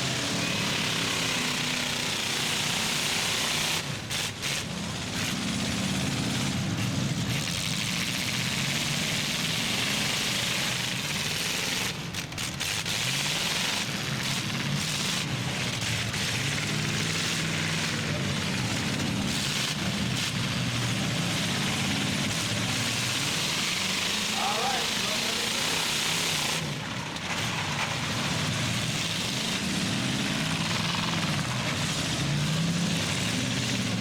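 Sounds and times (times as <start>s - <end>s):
engines revving: 0.0s - 34.0s.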